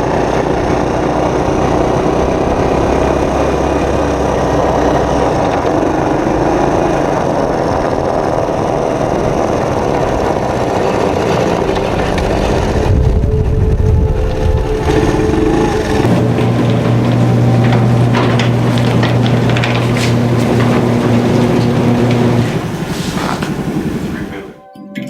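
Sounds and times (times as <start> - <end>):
steady hum: 0.0 - 24.6
vehicle engine running: 0.0 - 24.6.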